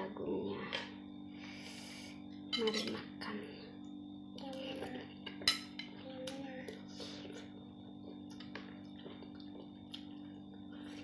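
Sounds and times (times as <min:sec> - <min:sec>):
soft eating clicks: 0:08.0 - 0:10.6.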